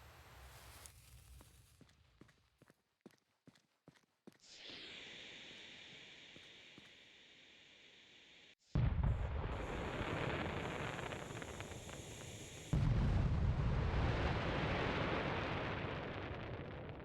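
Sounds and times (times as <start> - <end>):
firework explosions rumbling: 8.8 - 17.0.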